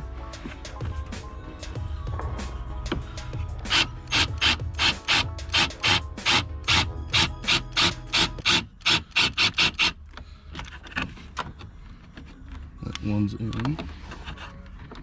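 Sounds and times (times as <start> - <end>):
screwdriver turning screw: 3.7 - 10.0.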